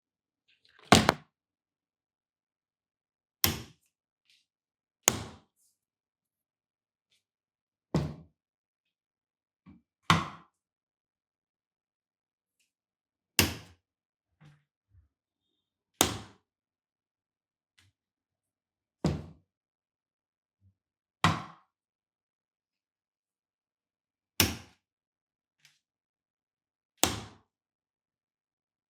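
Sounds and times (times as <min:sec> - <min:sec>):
door thud: 0:00.9 - 0:01.2.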